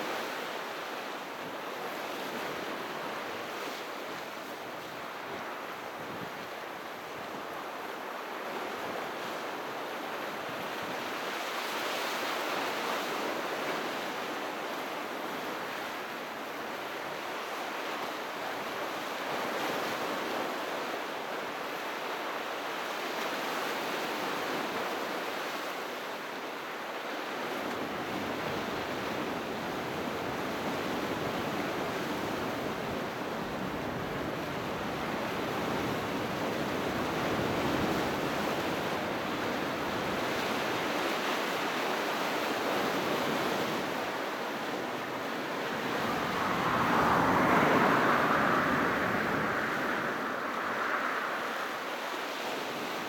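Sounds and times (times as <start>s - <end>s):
sea surf washing onto shore: 40.7s - 53.0s.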